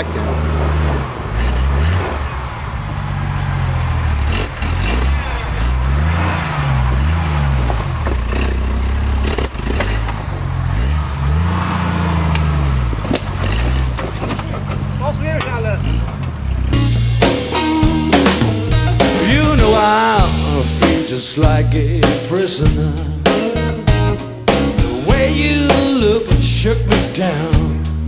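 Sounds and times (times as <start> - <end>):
off-road vehicle engine revving: 0.0 - 28.0
knocks and clatter: 0.1 - 11.0, 12.1 - 16.8.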